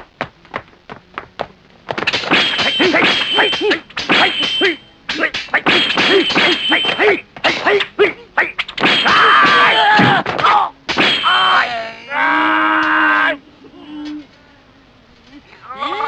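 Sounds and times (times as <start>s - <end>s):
punch and kick impacts: 1.9s - 7.8s, 8.8s - 11.5s.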